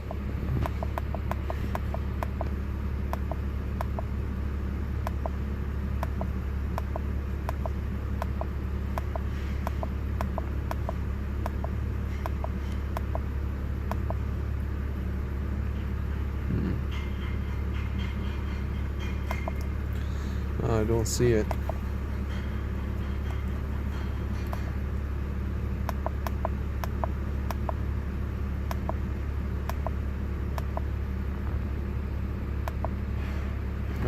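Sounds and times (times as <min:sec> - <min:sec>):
car engine idling: 0:00.0 - 0:34.0
light irregular ticks: 0:03.1 - 0:04.1, 0:05.0 - 0:05.4, 0:06.0 - 0:13.2, 0:13.9 - 0:14.2, 0:25.9 - 0:27.8, 0:28.7 - 0:29.0, 0:29.7 - 0:29.9.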